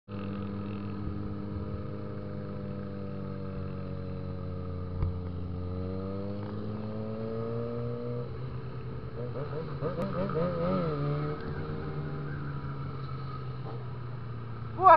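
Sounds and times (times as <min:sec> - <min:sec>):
motorcycle engine running: 0:00.1 - 0:14.9.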